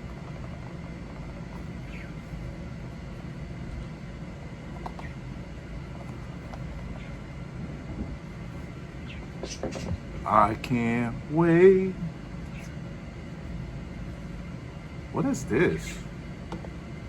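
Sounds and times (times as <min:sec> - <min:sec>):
low room hum: 0:00.0 - 0:17.0
pet birds chirping: 0:00.1 - 0:04.0, 0:04.7 - 0:05.4, 0:06.1 - 0:07.3, 0:08.3 - 0:10.2, 0:12.4 - 0:14.6.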